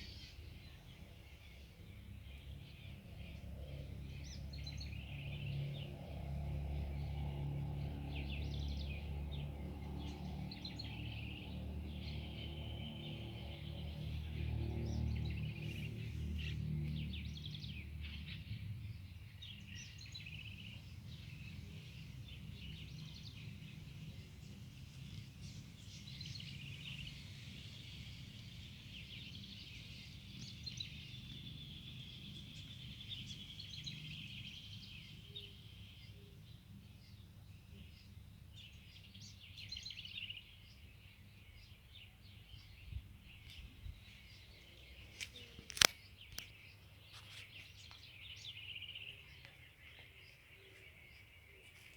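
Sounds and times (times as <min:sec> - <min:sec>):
small birds chirping: 0:08.1 - 0:51.9
low steady rumble: 0:19.6 - 0:36.0.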